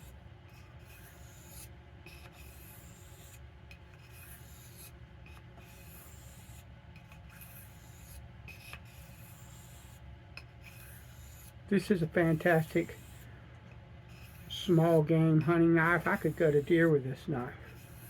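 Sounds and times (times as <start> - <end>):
knife scraping on sharpening stone: 0.5 - 11.6, 14.1 - 16.8, 17.6 - 18.0.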